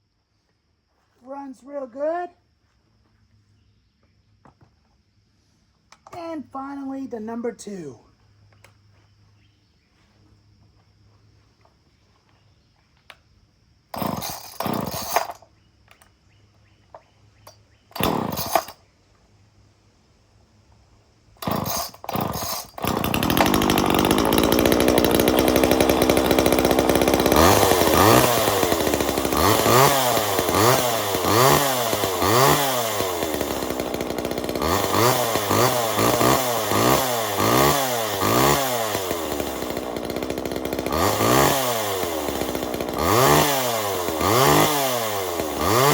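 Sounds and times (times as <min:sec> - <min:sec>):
chainsaw pull-starting: 0:05.9 - 0:06.7, 0:13.9 - 0:16.1, 0:17.4 - 0:18.8, 0:21.4 - 0:45.9
chainsaw engine revving: 0:13.9 - 0:15.4, 0:17.9 - 0:18.8, 0:21.4 - 0:45.9.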